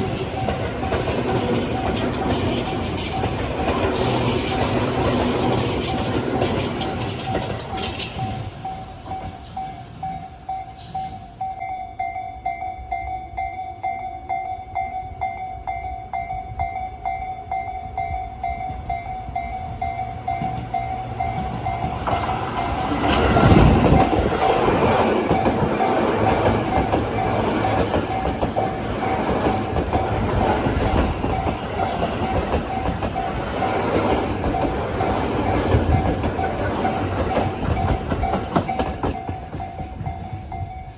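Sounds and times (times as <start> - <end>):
wheels clattering over rail joints: 0.0 - 9.6, 19.7 - 40.2
train rumbling past: 0.0 - 12.2, 15.4 - 40.9.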